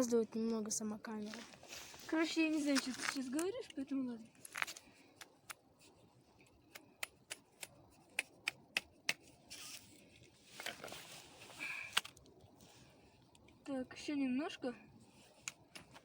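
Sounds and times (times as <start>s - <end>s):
ice chipping taps and clicks: 6.4s - 9.2s.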